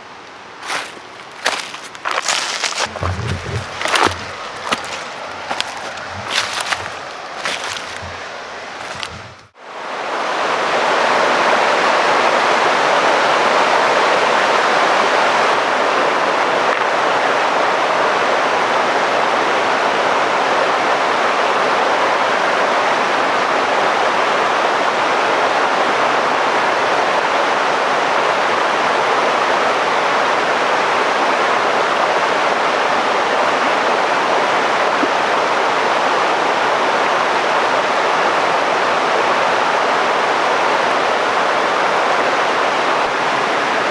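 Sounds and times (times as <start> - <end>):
river rushing: 0.0 - 13.3.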